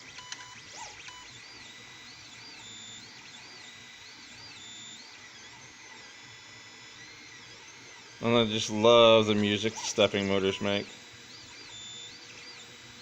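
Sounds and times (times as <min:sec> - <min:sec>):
stepper motors whining: 0:00.0 - 0:13.0.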